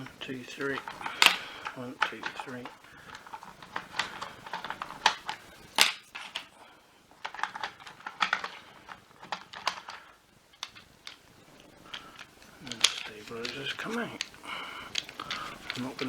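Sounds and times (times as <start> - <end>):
plastic parts clicking and tapping: 0.0 - 16.0.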